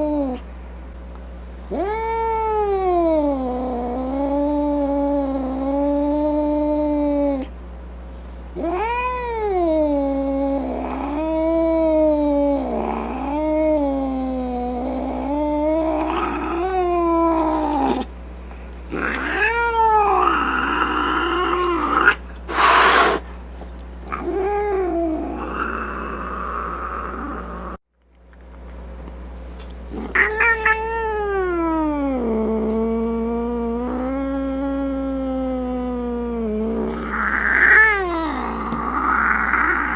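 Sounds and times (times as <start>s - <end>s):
cat hissing: 18.9s - 23.3s, 36.0s - 39.9s
cat yowling: 19.0s - 23.3s, 30.0s - 32.7s, 33.3s - 39.9s.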